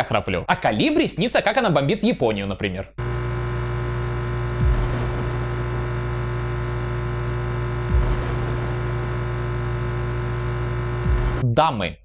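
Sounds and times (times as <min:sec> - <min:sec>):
high thin whistle snoring: 0:03.0 - 0:04.8, 0:06.2 - 0:08.0, 0:09.6 - 0:11.3
steady electrical hum: 0:03.0 - 0:11.4.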